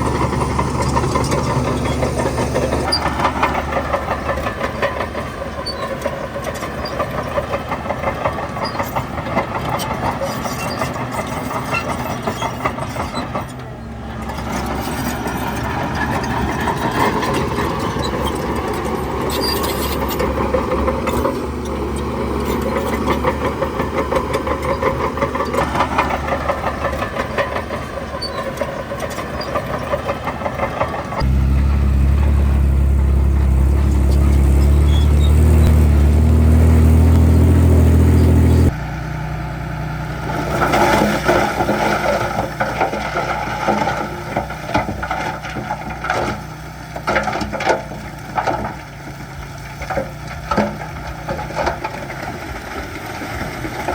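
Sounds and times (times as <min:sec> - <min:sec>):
low engine drone: 0:00.0 - 0:05.9, 0:31.2 - 0:41.7
knocks and rattling: 0:00.0 - 0:38.8
diesel engine clattering: 0:00.0 - 0:53.9.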